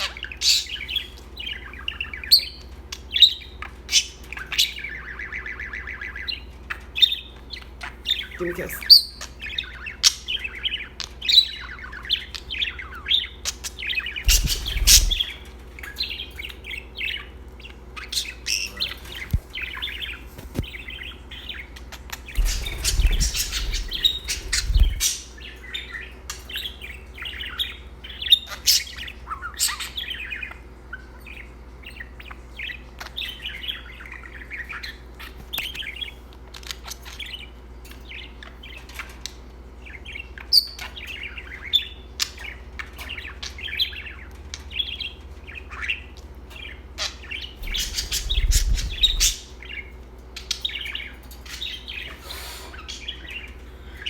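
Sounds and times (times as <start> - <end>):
budgerigar chattering and warbling: 14.2 - 15.3, 22.3 - 25.3, 47.1 - 49.5
rustling rumble: 14.2 - 15.5, 18.8 - 20.9, 22.3 - 25.3, 47.6 - 49.4.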